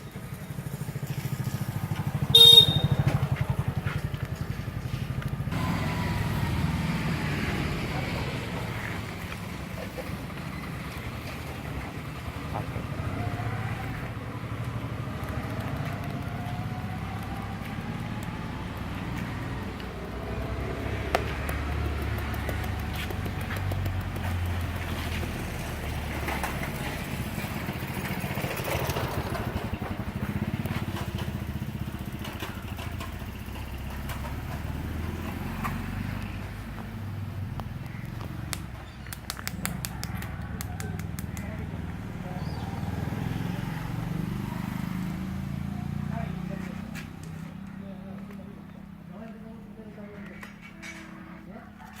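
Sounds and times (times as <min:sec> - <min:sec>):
motorcycles passing: 0:00.0 - 0:52.0
street traffic rumble: 0:00.0 - 0:52.0
sharp clicks and taps: 0:21.1 - 0:24.8, 0:37.6 - 0:42.0.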